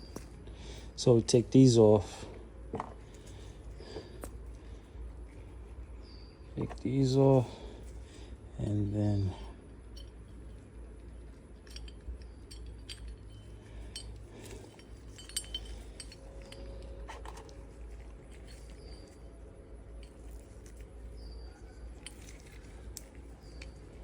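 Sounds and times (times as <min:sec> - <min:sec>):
steady low hum: 0:00.0 - 0:24.0
small metal parts clinking: 0:09.8 - 0:24.0.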